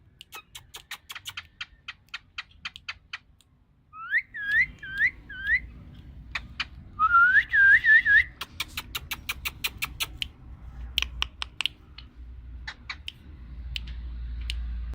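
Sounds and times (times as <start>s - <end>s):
parrot sharp clicks: 0.2s - 3.5s, 8.3s - 14.6s
parrot whistling: 3.9s - 5.7s.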